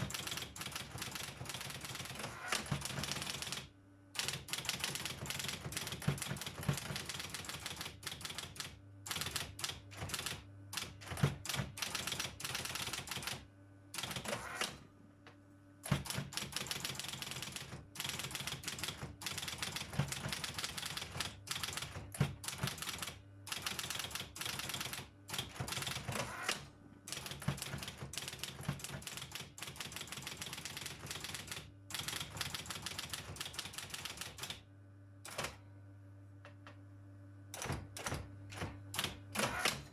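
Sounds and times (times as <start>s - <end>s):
typewriter key strikes: 4.2s - 13.3s, 15.9s - 26.2s, 27.1s - 31.4s.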